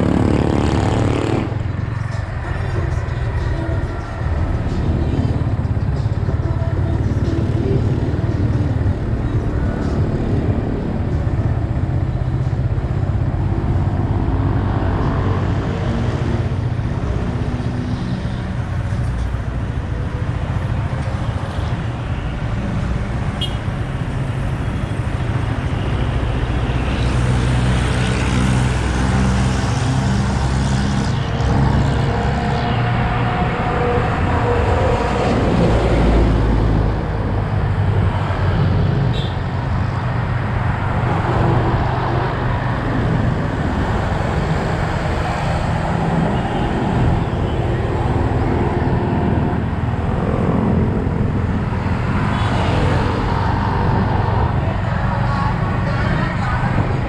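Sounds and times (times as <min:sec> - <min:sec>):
road traffic: 0:00.0 - 0:57.0
wind rush: 0:29.2 - 0:57.0.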